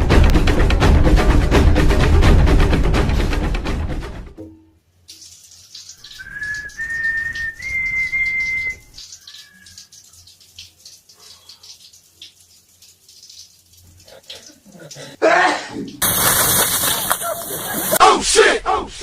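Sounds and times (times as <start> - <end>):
person whistling a pure tone: 6.2 - 9.0
faint crackling hiss: 16.0 - 18.0.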